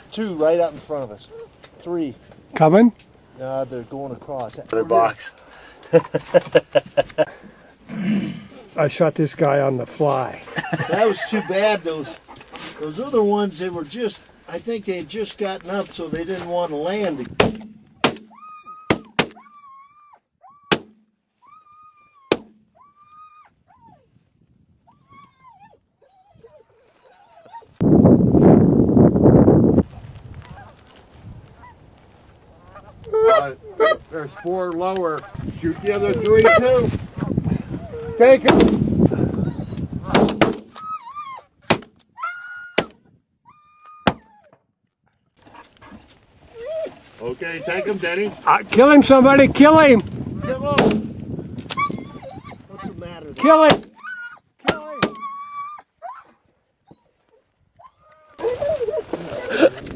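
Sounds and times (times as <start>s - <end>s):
shotgun blasts: 17.3s - 18.3s, 38.5s - 38.9s, 50.8s - 51.2s
geese honking: 32.6s - 36.8s.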